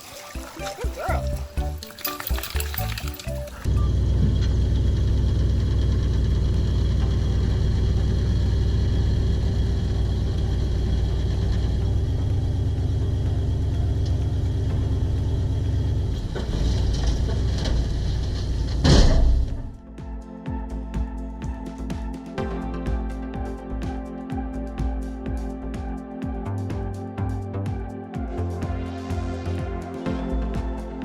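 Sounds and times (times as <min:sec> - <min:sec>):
excavator diesel engine running: 0:03.2 - 0:19.7.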